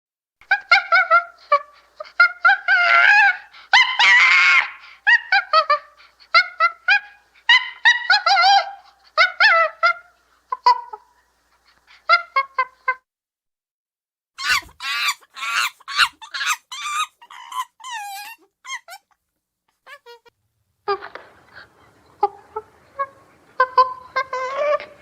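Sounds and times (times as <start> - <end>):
chimpanzee hooting: 2.2 - 10.1, 14.4 - 19.1, 22.2 - 25.0
chimpanzee screaming: 2.5 - 5.9, 14.4 - 19.1.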